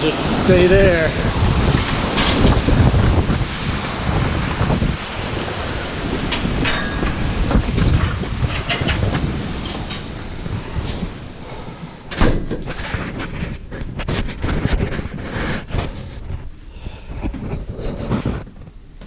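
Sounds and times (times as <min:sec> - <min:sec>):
wind buffeting microphone: 0:00.0 - 0:19.0
rattling and clattering: 0:01.6 - 0:02.7, 0:05.5 - 0:11.2, 0:12.0 - 0:19.0.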